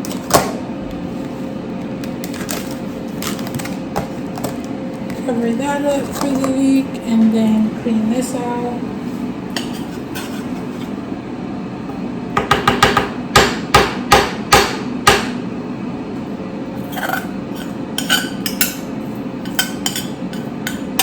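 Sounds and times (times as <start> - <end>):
steady low hum: 0.0 - 21.0
loud sharp knocks: 12.4 - 15.4
utensils and dishes clattering: 16.8 - 21.0.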